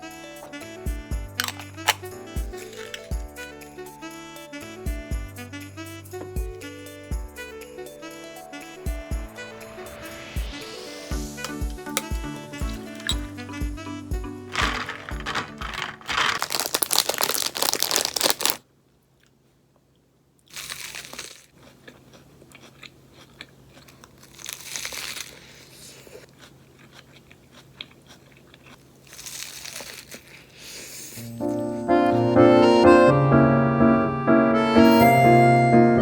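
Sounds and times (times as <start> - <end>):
rustling and crackling: 1.4 - 3.2, 12.0 - 18.6.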